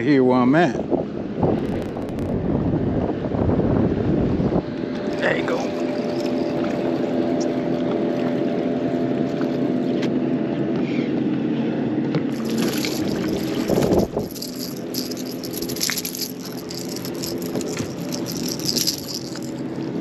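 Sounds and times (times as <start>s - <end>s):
crackling splash: 1.6s - 2.4s.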